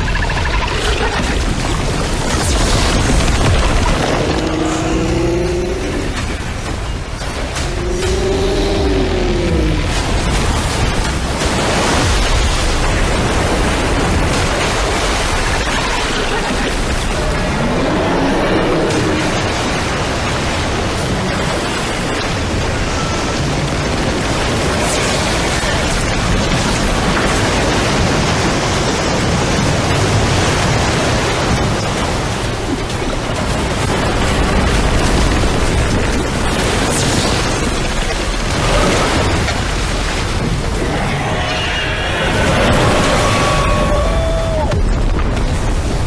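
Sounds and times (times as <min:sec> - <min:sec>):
heavy low rumble: 0:00.0 - 0:46.0
heavy rain: 0:00.0 - 0:46.0
wind: 0:00.0 - 0:46.0.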